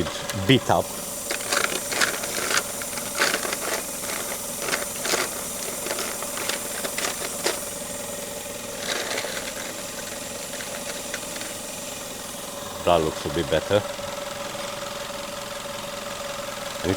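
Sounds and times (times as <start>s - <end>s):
car engine idling: 0.0s - 16.9s
clicks and rattles of probe leads: 1.2s - 7.8s, 8.8s - 11.6s.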